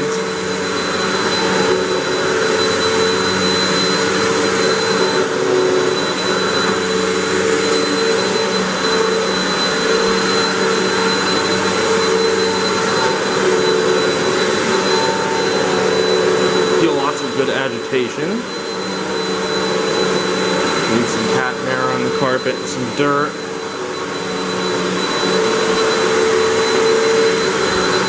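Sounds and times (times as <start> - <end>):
upright vacuum cleaner running: 0.0 - 28.0.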